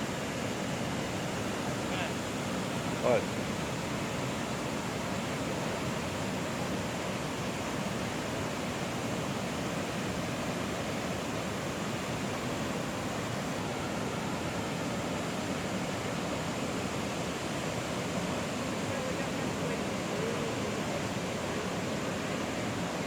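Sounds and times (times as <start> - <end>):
waterfall rushing: 0.0 - 23.0.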